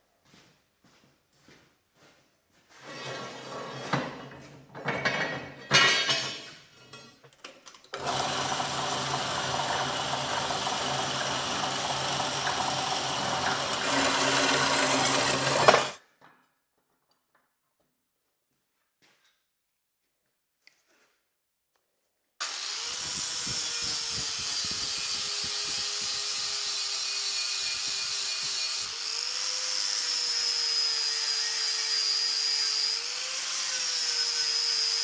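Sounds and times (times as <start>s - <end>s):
power tool working metal: 8.0s - 16.0s, 22.4s - 35.0s.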